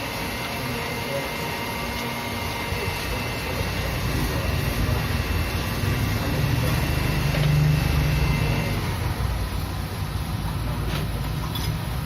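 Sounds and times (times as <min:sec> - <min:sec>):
road traffic rumble: 0:01.8 - 0:12.0.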